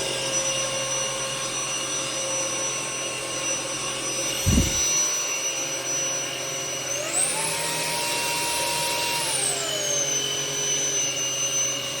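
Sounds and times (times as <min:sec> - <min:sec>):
stick vacuum running: 0:04.3 - 0:05.0.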